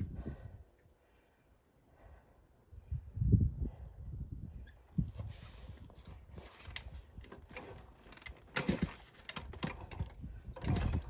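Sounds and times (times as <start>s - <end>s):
motorcycle mechanical clicks and clunks: 6.0s - 11.0s.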